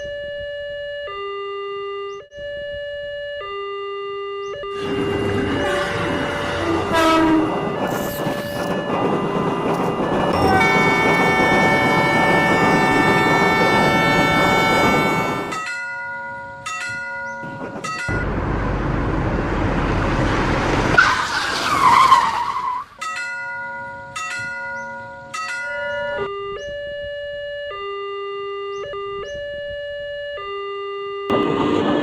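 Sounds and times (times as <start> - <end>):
multi-tone train horn: 4.6 - 8.7, 9.6 - 15.7
crossing signal bells dinging: 4.6 - 18.4, 23.0 - 27.0
wavering screech: 4.7 - 15.6
train passing: 4.7 - 15.7, 17.3 - 23.2, 31.3 - 32.0
rushing noise: 4.8 - 15.6, 31.3 - 32.0.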